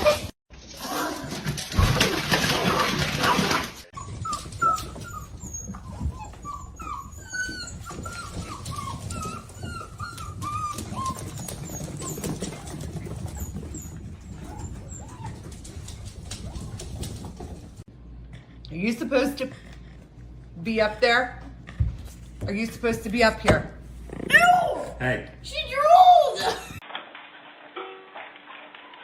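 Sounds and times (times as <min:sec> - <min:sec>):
dog whimpering: 0:04.0 - 0:15.6.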